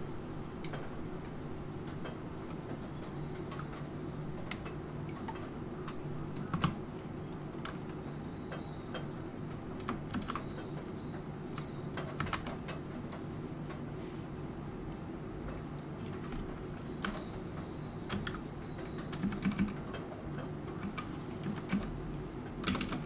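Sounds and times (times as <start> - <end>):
computer keyboard typing: 4.4 - 6.8, 7.6 - 9.1, 9.8 - 10.9, 11.6 - 13.2, 16.0 - 17.4, 18.1 - 23.0.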